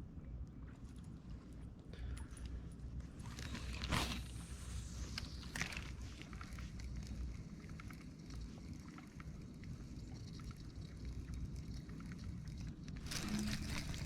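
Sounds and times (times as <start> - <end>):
water lapping against a hull: 4.1 - 14.0.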